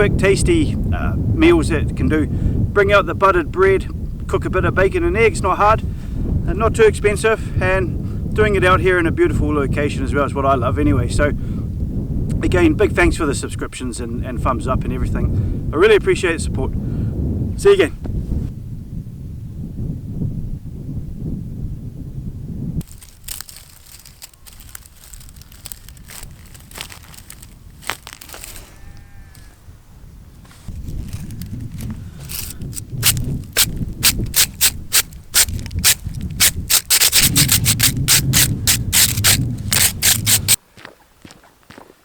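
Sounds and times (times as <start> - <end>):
wind buffeting microphone: 0.0 - 40.6
crunching rustling clicks: 22.8 - 29.5, 30.5 - 40.6.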